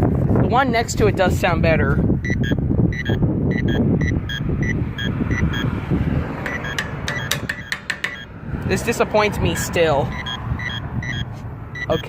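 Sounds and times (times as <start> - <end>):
road traffic: 0.0 - 12.0
crosswalk signal beeping: 2.2 - 5.8, 6.4 - 8.4, 10.0 - 12.0
crosswalk signal clicks: 2.3 - 5.7, 6.4 - 8.4, 10.1 - 12.0.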